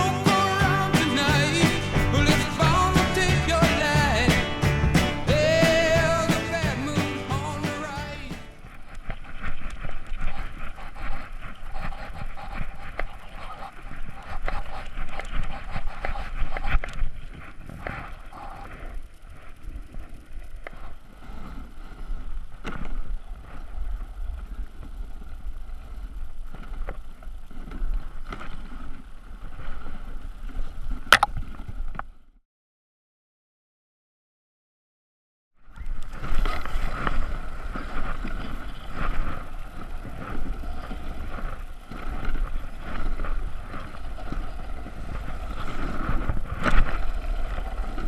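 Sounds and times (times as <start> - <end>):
sled scraping over snow: 0.0 - 31.1, 35.8 - 48.0
sharp click: 31.1 - 31.4
wind on microphone: 35.9 - 48.0.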